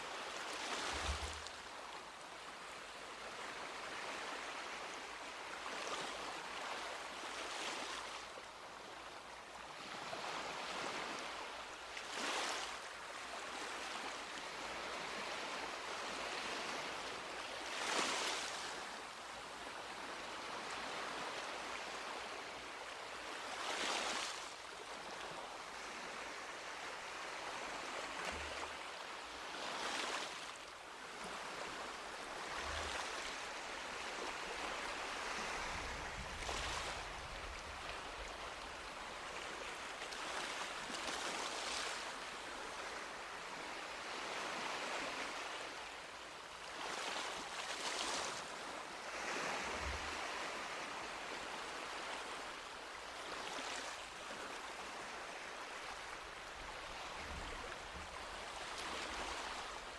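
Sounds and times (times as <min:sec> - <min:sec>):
waves breaking on a beach: 0:00.0 - 0:59.9.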